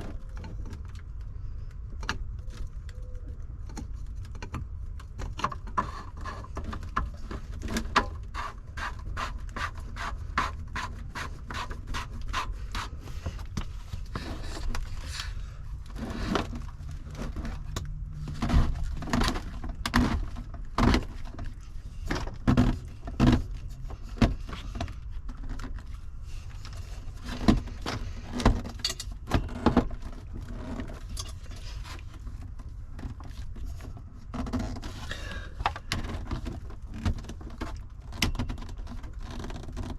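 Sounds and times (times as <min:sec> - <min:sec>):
low steady hum: 0:00.0 - 0:39.9
tools and parts knocking and clinking: 0:27.4 - 0:31.6.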